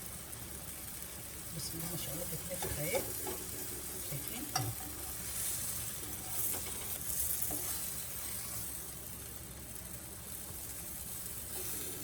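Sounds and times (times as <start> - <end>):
ghee sizzling in a frying pan: 0.0 - 12.0.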